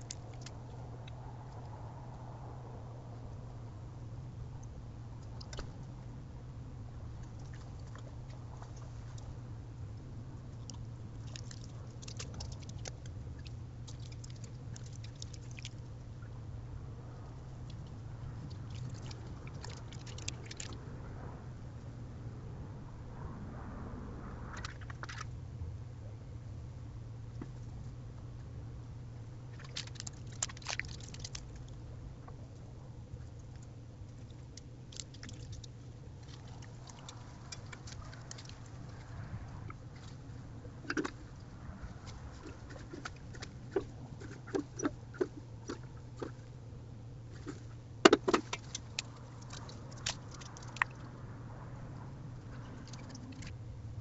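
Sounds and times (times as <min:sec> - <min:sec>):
steady low hum: 0:00.0 - 0:54.0
claws and chewing on bird feeder: 0:07.0 - 0:16.3, 0:17.1 - 0:20.8, 0:29.5 - 0:51.1, 0:52.3 - 0:53.6
clicks and scratching on bird feeder: 0:42.1 - 0:46.4.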